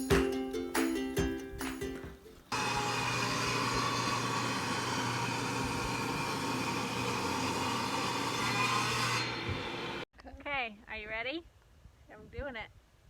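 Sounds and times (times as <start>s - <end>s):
motor whirring with low hum: 2.6s - 10.0s.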